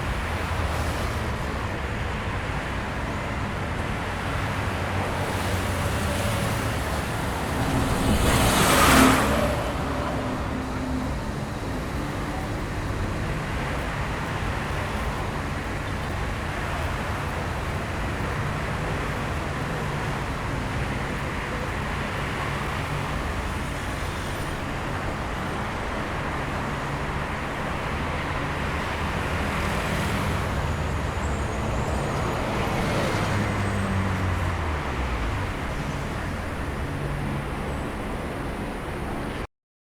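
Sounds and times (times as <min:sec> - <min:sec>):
city street traffic: 0:00.0 - 0:39.5
vehicle passing close: 0:05.2 - 0:12.9.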